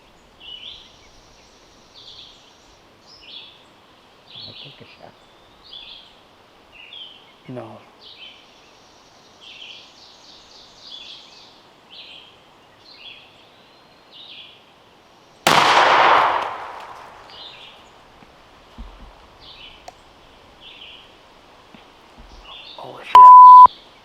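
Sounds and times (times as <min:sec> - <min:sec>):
shotgun blast with echo: 0:15.5 - 0:17.8.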